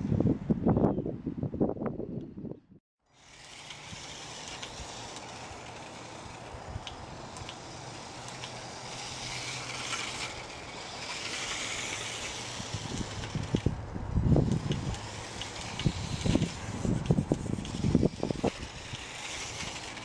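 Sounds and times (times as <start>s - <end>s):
rc car motor whining: 3.0s - 20.0s.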